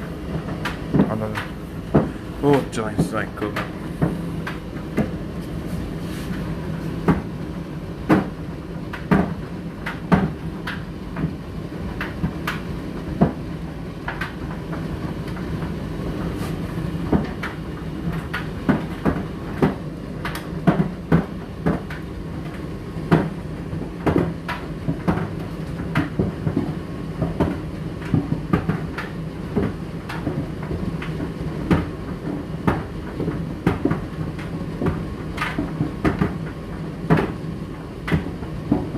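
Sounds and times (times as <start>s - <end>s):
tumble dryer motor hum: 0.0s - 38.9s
load knocking in dryer drum: 38.0s - 38.9s.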